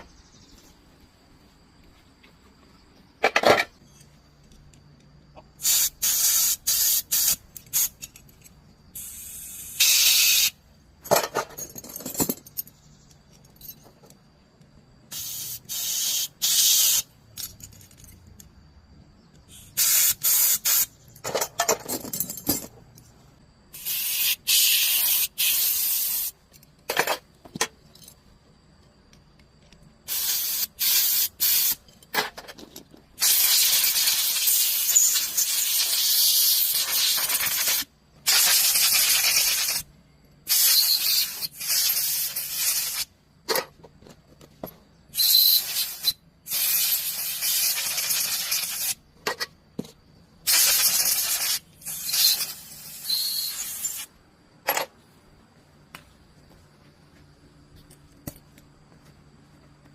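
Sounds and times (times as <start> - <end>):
spraying hiss bursts: 5.6 - 8.0, 8.9 - 10.6, 15.1 - 17.1, 19.5 - 21.0, 23.7 - 26.4, 30.0 - 31.8, 33.2 - 39.9, 40.5 - 43.1, 45.1 - 49.0, 50.4 - 54.1.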